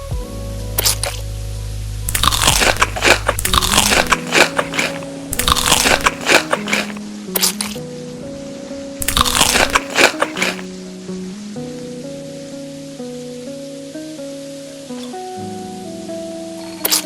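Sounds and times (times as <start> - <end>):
background music simple melody: 0.0 - 17.0
crisp food crunching: 2.1 - 7.0, 9.0 - 10.7.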